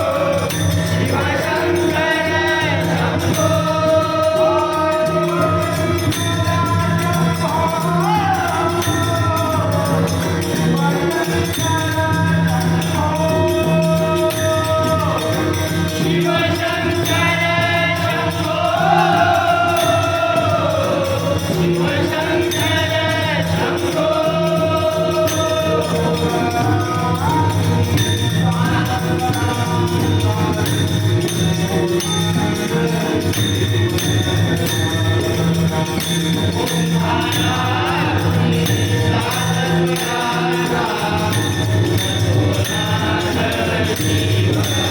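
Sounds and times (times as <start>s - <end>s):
group chanting in chorus: 0.0s - 7.4s, 13.6s - 27.5s, 36.7s - 44.9s
rhythmic percussion: 0.0s - 44.9s.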